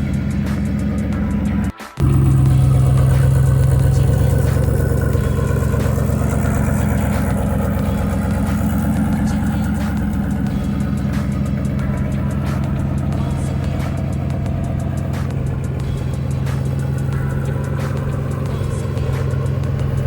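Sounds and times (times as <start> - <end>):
pickup engine idling: 0.0 - 20.0.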